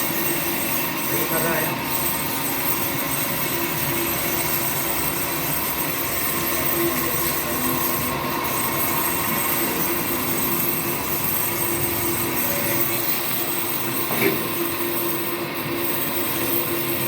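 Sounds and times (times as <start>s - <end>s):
machine running with hiss and whine: 0.0s - 17.0s.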